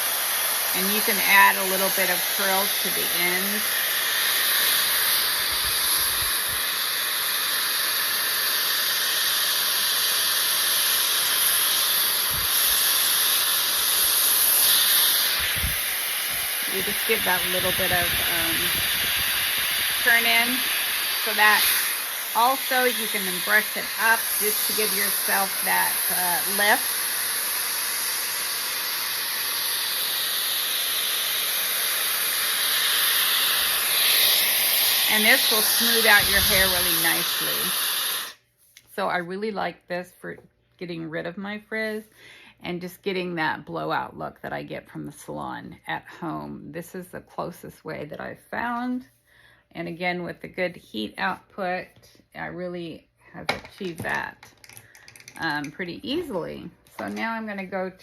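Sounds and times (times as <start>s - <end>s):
hair dryer rushing air: 0.0s - 38.4s, 53.5s - 57.9s.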